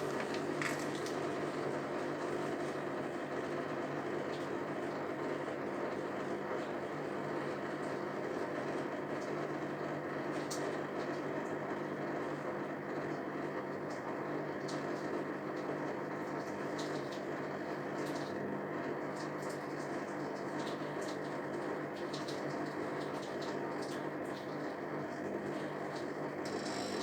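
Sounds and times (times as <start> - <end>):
washing machine hum: 0.0 - 27.0.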